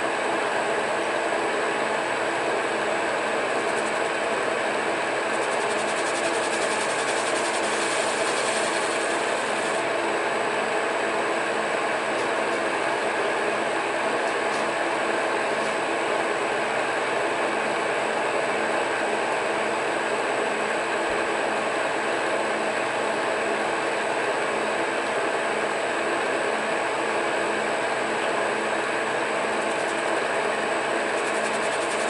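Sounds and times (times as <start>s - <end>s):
lathe humming: 0.3s - 10.5s, 21.9s - 32.0s.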